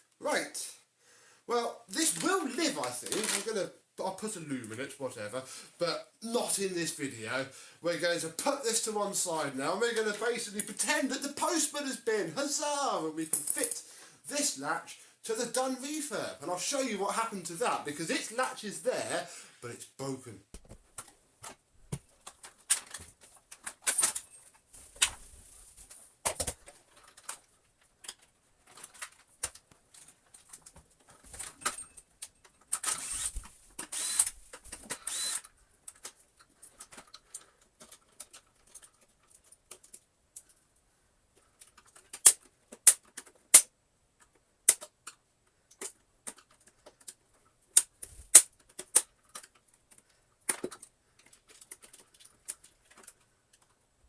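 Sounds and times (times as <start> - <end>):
scraping and rustling: 2.0 - 3.5
plastic parts clicking and knocking: 2.2 - 3.5, 20.5 - 25.2, 26.2 - 40.7, 41.3 - 53.8
sharp clicks: 32.8 - 35.5.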